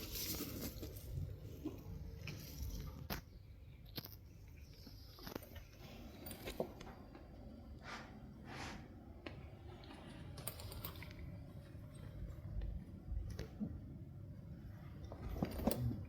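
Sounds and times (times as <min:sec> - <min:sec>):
basket rustling: 0:00.0 - 0:01.4.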